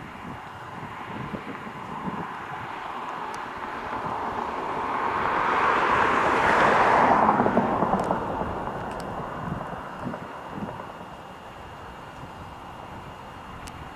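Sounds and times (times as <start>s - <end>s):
vehicle passing by: 1.2s - 9.9s.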